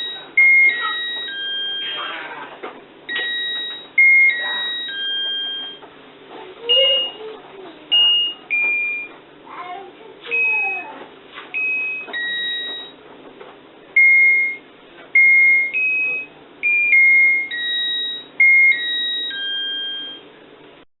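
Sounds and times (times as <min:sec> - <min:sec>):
electronic beeping melody: 0:00.0 - 0:02.1, 0:03.1 - 0:05.8, 0:07.9 - 0:09.1, 0:11.6 - 0:13.0, 0:14.0 - 0:14.6, 0:15.2 - 0:20.2.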